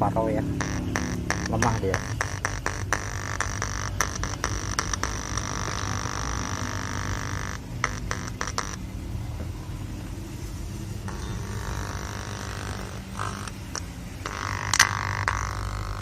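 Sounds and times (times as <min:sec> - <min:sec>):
distorted speaker rumbling hum: 0:00.0 - 0:16.0.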